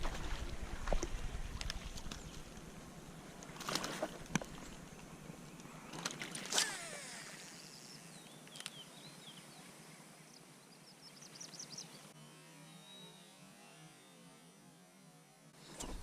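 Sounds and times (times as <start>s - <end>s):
small birds chirping: 7.4s - 12.2s.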